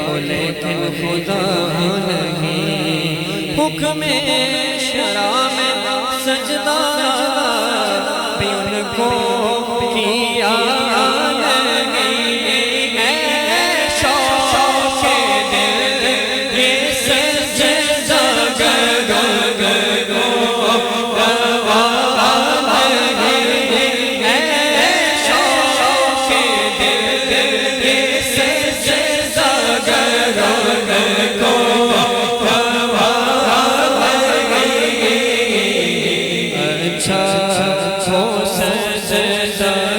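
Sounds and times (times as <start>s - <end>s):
chanted vocal backing: 0.0s - 39.9s
person singing devotional song: 0.0s - 39.9s.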